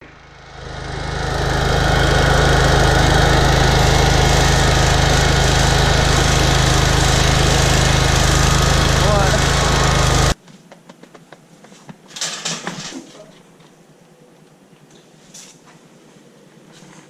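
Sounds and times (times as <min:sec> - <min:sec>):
small engine running: 0:00.0 - 0:10.4.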